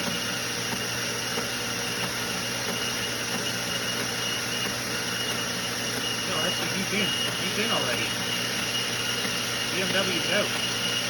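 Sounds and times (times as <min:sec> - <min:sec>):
treadmill motor and belt running: 0:00.0 - 0:11.0
high whine: 0:06.1 - 0:11.0.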